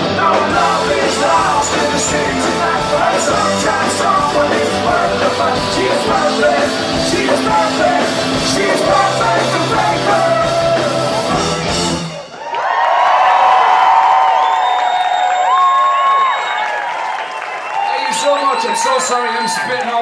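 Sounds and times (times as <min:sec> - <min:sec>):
live rock band playing: 0:00.0 - 0:12.4
crowd cheering and whistling: 0:00.0 - 0:20.0.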